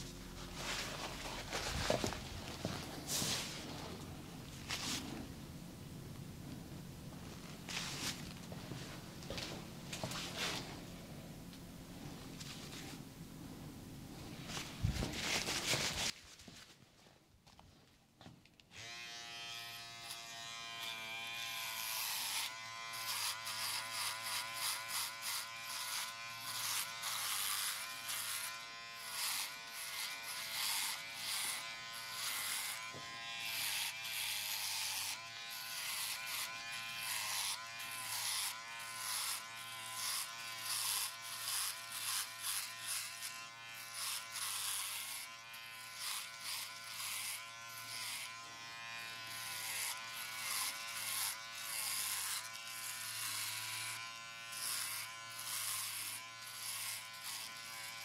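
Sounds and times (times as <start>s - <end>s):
electric clipper buzzing: 18.7s - 58.0s.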